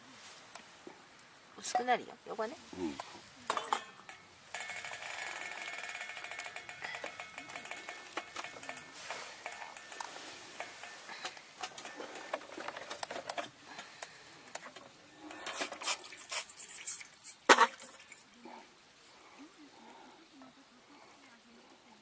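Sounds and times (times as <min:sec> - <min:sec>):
cups and utensils clinking: 0:03.0 - 0:18.3.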